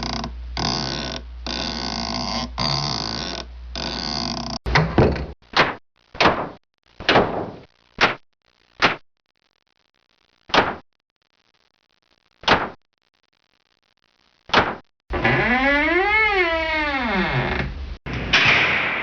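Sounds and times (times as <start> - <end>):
door slamming: 4.7 - 5.4.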